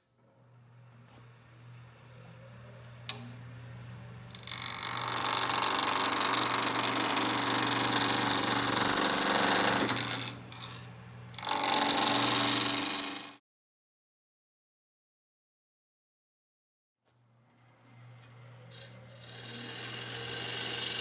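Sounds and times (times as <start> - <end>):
wood lathe humming: 0.8 - 13.3, 17.9 - 21.0
gouge cutting spinning wood: 4.2 - 13.3, 18.7 - 21.0.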